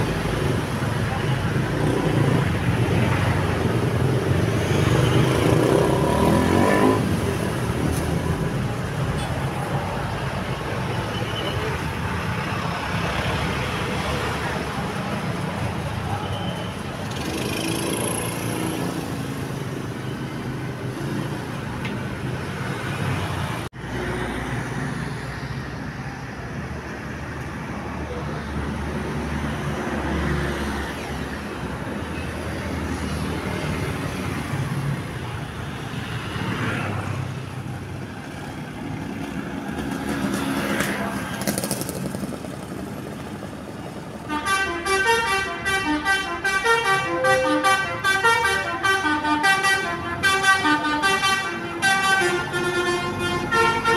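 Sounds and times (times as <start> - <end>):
roadside traffic: 0.0 - 53.9
bus horn playing melody: 44.3 - 53.9.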